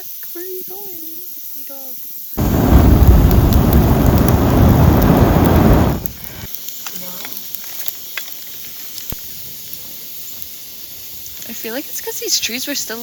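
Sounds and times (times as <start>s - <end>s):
campfire hissing and crackling: 0.0s - 13.0s
wind rushing on microphone: 2.4s - 6.5s.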